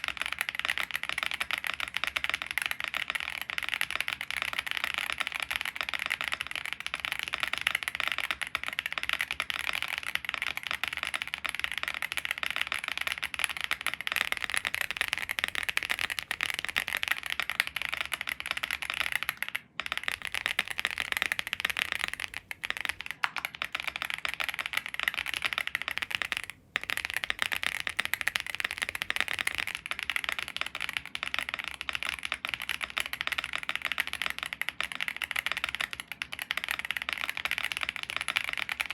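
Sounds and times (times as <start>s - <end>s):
fast mechanical keyboard typing: 0.0s - 38.9s.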